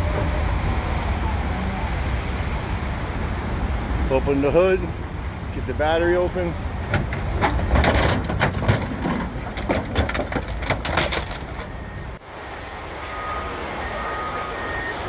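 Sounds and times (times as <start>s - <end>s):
car body being crushed: 6.8s - 11.9s.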